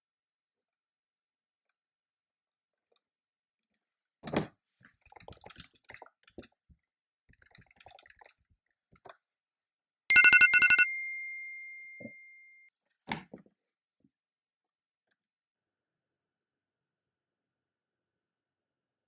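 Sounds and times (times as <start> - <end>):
timer alarm beeping: 10.1 - 12.7.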